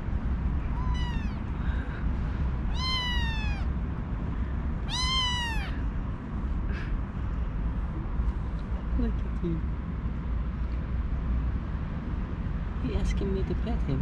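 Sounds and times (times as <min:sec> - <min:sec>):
low background rumble: 0:00.0 - 0:14.0
kitten meowing loudly: 0:00.7 - 0:01.5, 0:02.7 - 0:03.7, 0:04.8 - 0:05.8.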